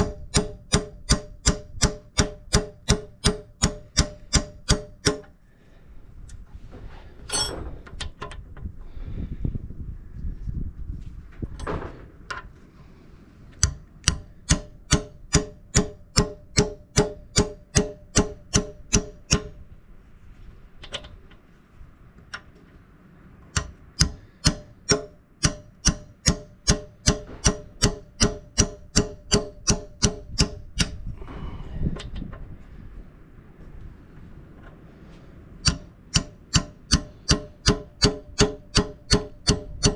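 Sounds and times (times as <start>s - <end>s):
hammer striking steel pin: 0.0s - 5.4s, 13.6s - 19.6s, 23.5s - 31.0s, 35.6s - 39.9s.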